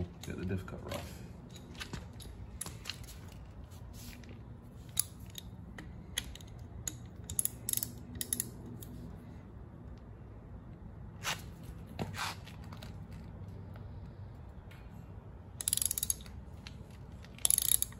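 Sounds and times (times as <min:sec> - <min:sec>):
ratchet wrench clicking: 0:04.8 - 0:09.0, 0:15.6 - 0:17.9.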